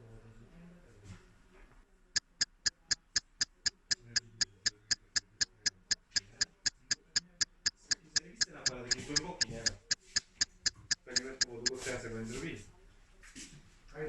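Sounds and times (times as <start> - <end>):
sharp high ticks: 2.2 - 11.8.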